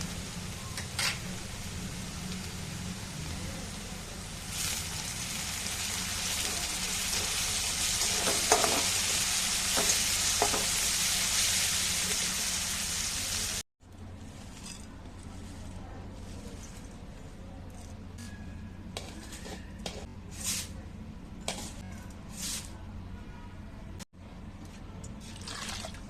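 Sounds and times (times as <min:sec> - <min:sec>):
food sizzling in a pan: 0:00.0 - 0:13.6.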